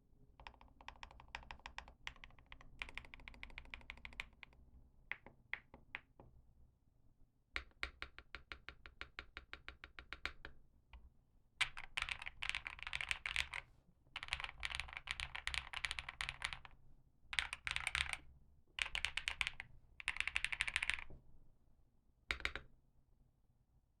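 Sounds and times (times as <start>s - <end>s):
typing on mechanical keyboard: 0.4s - 4.4s, 11.6s - 13.6s, 14.2s - 16.7s, 17.3s - 18.2s, 18.8s - 21.1s.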